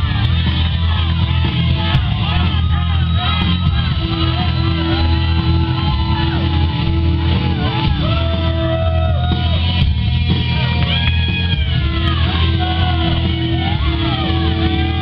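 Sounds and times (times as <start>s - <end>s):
guitar: 0.0s - 15.0s
rock music with singing: 0.0s - 15.0s
steady bass line: 0.0s - 15.0s.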